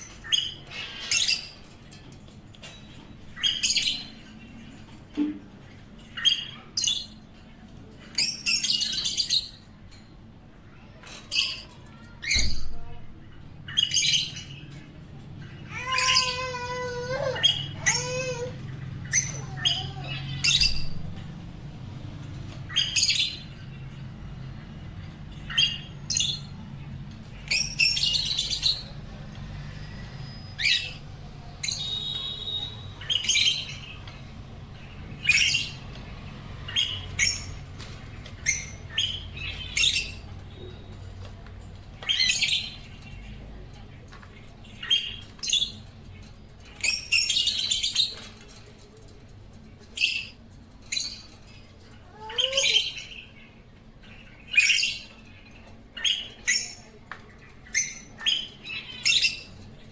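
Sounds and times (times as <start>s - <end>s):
birds chirping and squawking: 0.0s - 59.9s.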